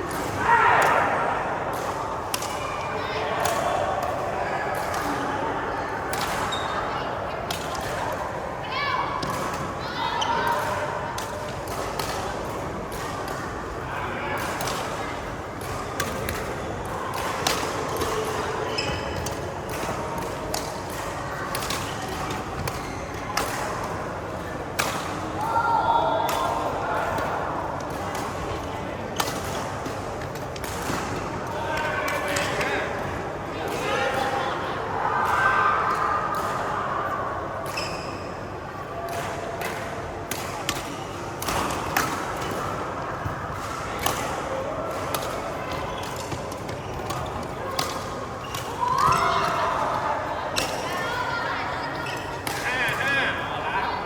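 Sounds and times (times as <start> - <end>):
background noise: 0.0 - 54.0
indoor sports hall background: 0.0 - 54.0
rackets hitting shuttlecock: 10.4 - 13.8, 14.4 - 25.5, 29.1 - 32.8, 35.3 - 36.7, 39.1 - 50.9.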